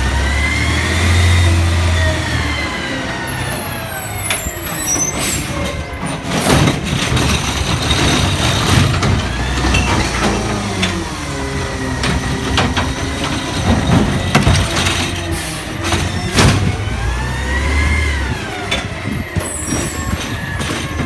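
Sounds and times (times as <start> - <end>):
garbage truck engine running: 0.0 - 21.0
metal clanks and knocks: 5.2 - 17.2.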